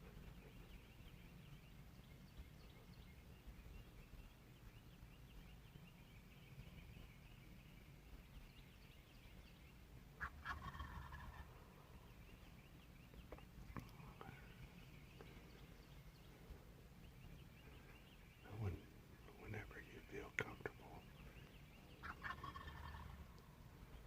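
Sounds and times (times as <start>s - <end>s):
turkey gobbling: 10.2s - 11.6s, 22.0s - 23.2s.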